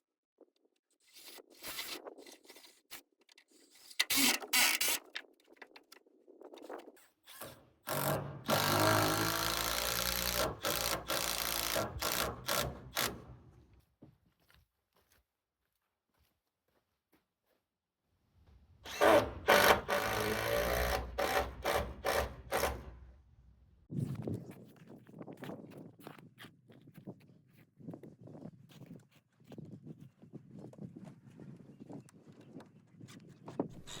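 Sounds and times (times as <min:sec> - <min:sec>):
power drill driving screws: 0:04.1 - 0:05.1, 0:07.3 - 0:13.4, 0:18.9 - 0:23.1.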